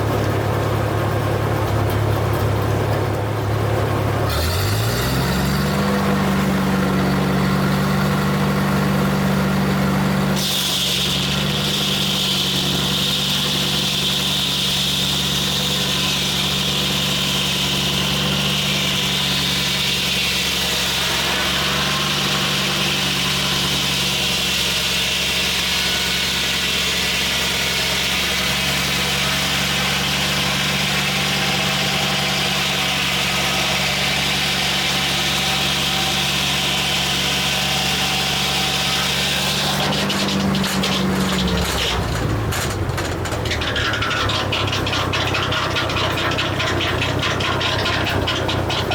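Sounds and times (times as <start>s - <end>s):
sawmill engine drone: 0.0s - 48.9s
saw high whine: 8.9s - 42.1s.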